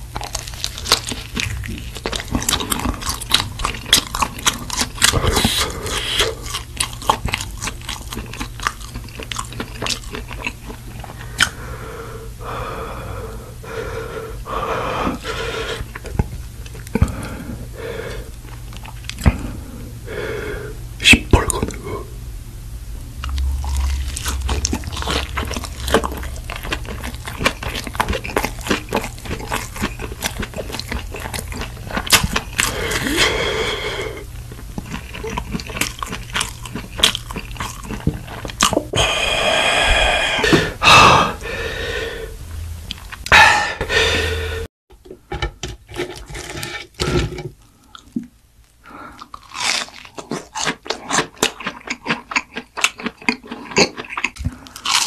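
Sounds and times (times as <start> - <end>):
crunching and chewing food: 0.0 - 11.9, 14.4 - 19.9, 23.2 - 41.5, 42.8 - 43.4, 45.7 - 55.0.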